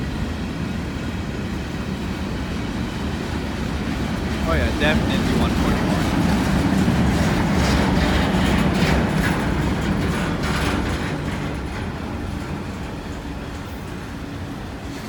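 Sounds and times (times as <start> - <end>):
freight train rumbling past: 0.0 - 15.0
wheels clattering over rail joints: 3.8 - 15.0.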